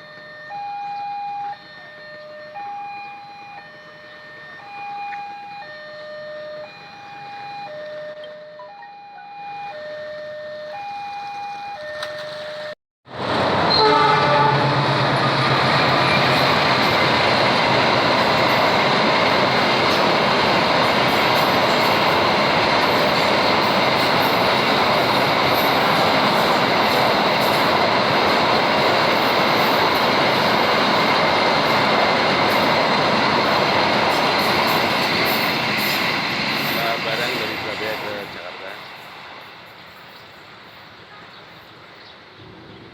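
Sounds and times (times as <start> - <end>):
level crossing two-tone alarm: 0.0 - 12.8
freight train wheels on rails: 10.7 - 42.9
train horn blast: 13.7 - 15.2.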